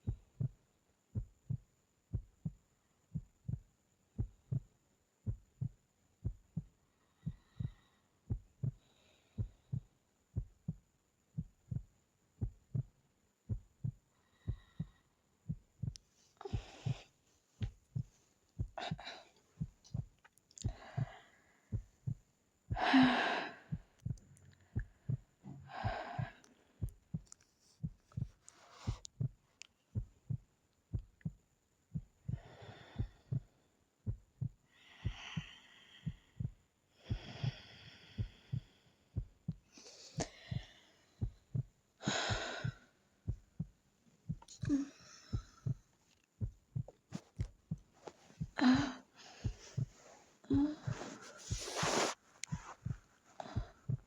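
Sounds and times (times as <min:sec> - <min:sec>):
soft low thumps: 0:00.0 - 0:54.0
girl breathing: 0:06.9 - 0:09.8, 0:14.1 - 0:15.2, 0:15.8 - 0:26.9, 0:28.1 - 0:29.1, 0:32.2 - 0:33.6, 0:34.6 - 0:43.4, 0:44.3 - 0:45.9, 0:48.0 - 0:54.0.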